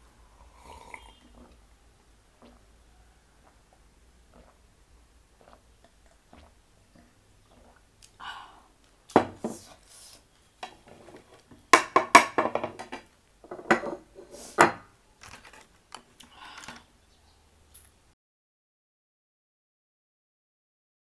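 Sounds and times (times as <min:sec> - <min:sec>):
dishes and cutlery clinking: 0:10.6 - 0:15.6.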